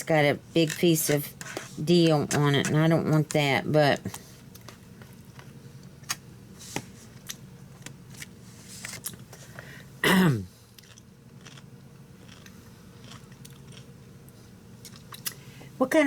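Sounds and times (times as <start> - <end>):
crunching on a pickle: 10.8 - 13.9.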